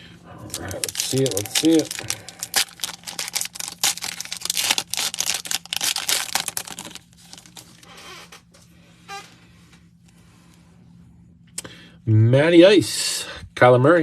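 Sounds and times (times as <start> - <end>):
wrapper tearing and crinkling: 0.5 - 8.1.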